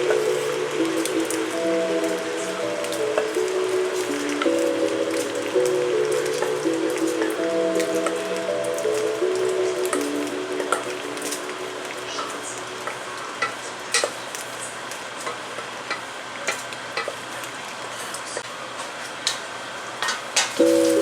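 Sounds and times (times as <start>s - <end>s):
food sizzling in a pan: 0.0s - 21.0s
utensil clicking against pan: 2.8s - 17.5s.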